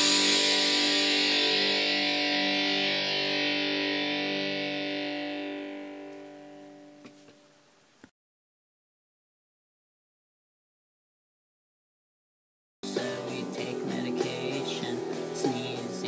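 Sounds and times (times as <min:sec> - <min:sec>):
distorted electric guitar chord: 0:00.0 - 0:07.5, 0:12.8 - 0:16.0.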